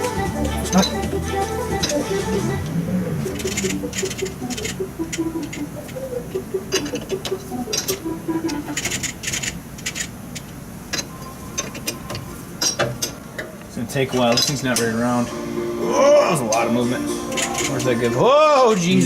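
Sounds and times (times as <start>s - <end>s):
faint background music: 0.0s - 9.5s, 11.0s - 19.0s
light metal clicks and scrapes: 6.8s - 15.0s, 17.3s - 18.0s.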